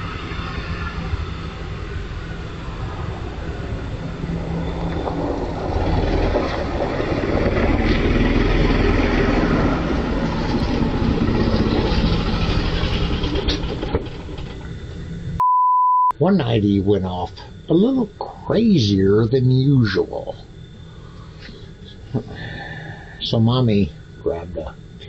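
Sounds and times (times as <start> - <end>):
passing vehicle rumble: 0.0 - 15.4.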